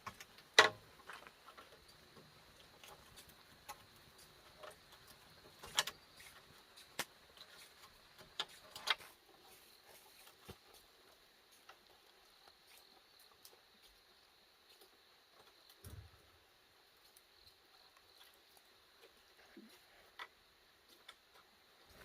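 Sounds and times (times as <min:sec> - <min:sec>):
light clicks and knocks: 0:00.0 - 0:09.2.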